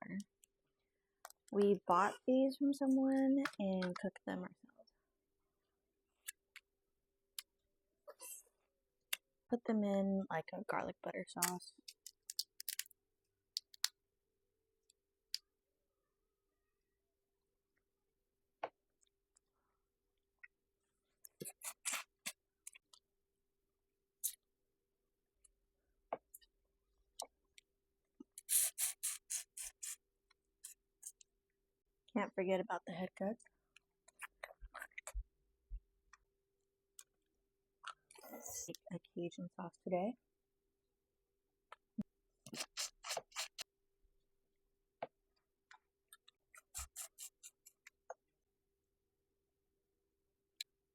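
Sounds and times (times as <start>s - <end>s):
crawfish shells cracking: 11.9s - 14.0s.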